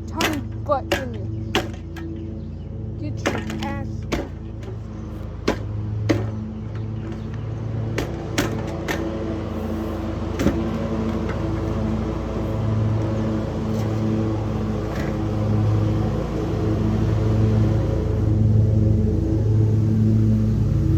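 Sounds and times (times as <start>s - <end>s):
sharp clicks or knocks: 0.0s - 2.4s, 3.2s - 9.5s, 10.2s - 15.4s
box fan motor hum: 0.0s - 20.8s.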